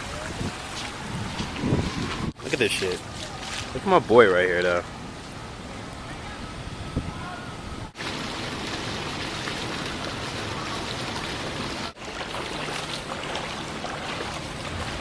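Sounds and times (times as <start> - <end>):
falling and running water: 8.0 - 15.0.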